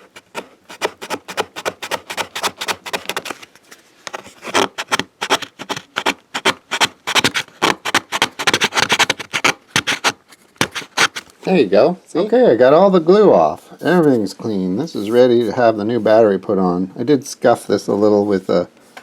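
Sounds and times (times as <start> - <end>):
scraping adhesive off metal: 0.0 - 3.4, 4.1 - 11.3.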